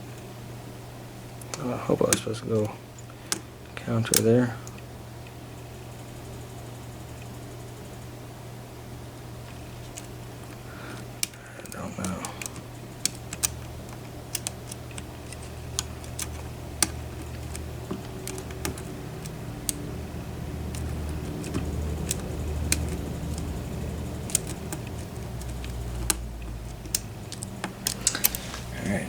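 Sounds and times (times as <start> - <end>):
lock picks clicking: 1.4 - 5.4, 9.4 - 28.8.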